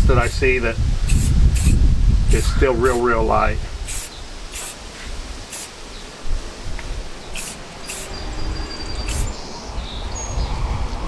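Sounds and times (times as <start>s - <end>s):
spray paint can hissing: 0.2s - 0.4s, 1.0s - 3.1s, 3.8s - 5.9s, 7.3s - 8.2s, 9.1s - 9.3s
faint bird chirping: 6.9s - 10.6s.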